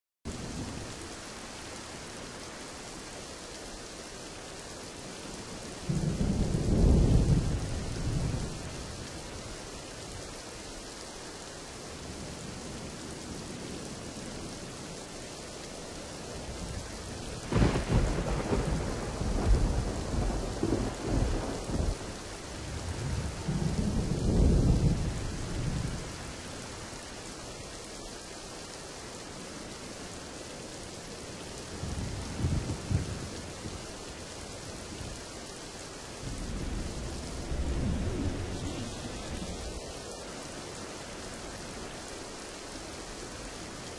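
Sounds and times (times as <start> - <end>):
steady rain falling: 0.3 - 43.9
thunder rumbling: 5.8 - 9.4, 16.4 - 26.3, 31.6 - 34.0, 36.2 - 39.9.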